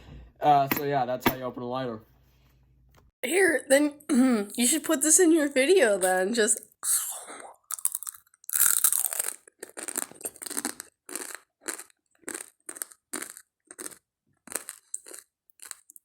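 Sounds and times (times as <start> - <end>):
person chewing crunchy food: 6.9 - 16.0.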